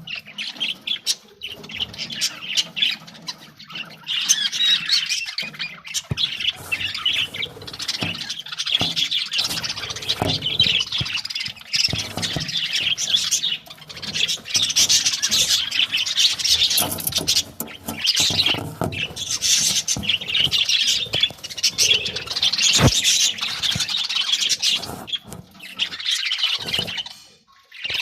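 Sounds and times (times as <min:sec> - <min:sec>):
budgerigars chirping: 0:00.0 - 0:28.0.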